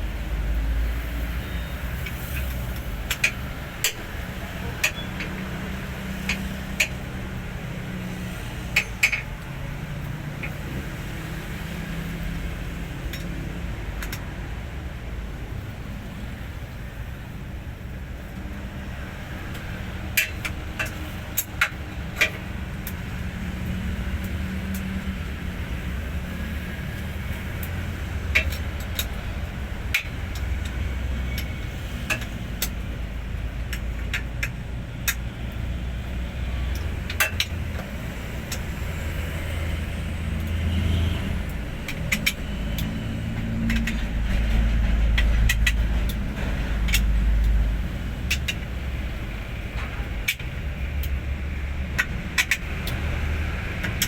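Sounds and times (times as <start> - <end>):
truck diesel engine rumbling: 19.8 - 54.0.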